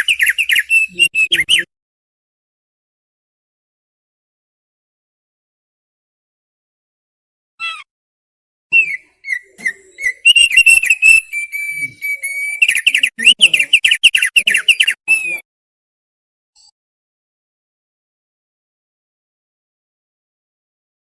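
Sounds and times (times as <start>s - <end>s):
bird singing whistled phrase: 0.0s - 1.7s, 8.8s - 15.4s.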